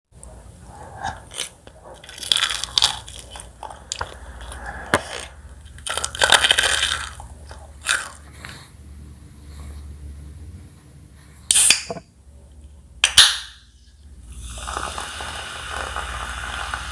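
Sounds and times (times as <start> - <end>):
crunchy bites and chewing: 1.0 - 8.6.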